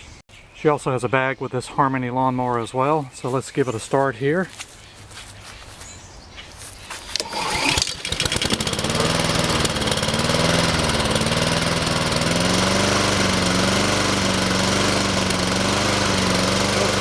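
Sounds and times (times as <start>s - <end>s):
mower engine running and surging: 6.9s - 17.0s
starter cord pull: 7.0s - 10.5s.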